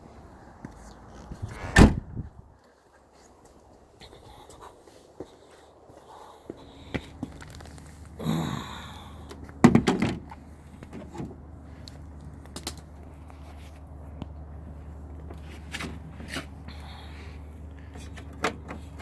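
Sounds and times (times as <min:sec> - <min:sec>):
knocks and clicks of car parts: 0:09.6 - 0:11.4.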